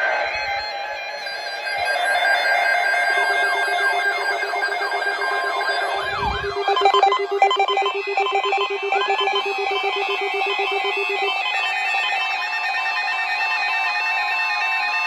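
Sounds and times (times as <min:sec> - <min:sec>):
siren-like alarm sweeps: 0:01.1 - 0:13.4
rapid pulsing beep: 0:02.8 - 0:12.4
short repeated beeps: 0:06.2 - 0:11.4.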